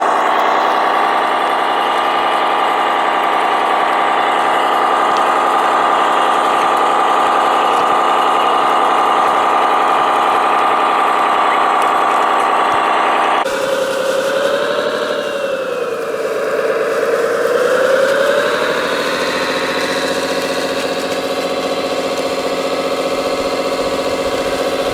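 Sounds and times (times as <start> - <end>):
model engine idling: 0.0 - 24.9.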